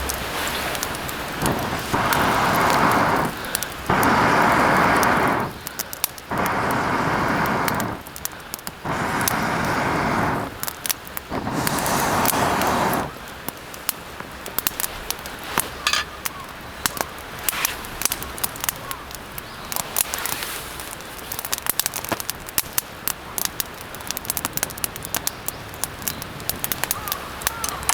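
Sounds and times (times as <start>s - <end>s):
rushing bursts of noise: 0.0s - 5.7s, 6.3s - 8.1s, 8.8s - 10.6s, 11.2s - 13.2s
campfire crackling: 0.0s - 27.9s.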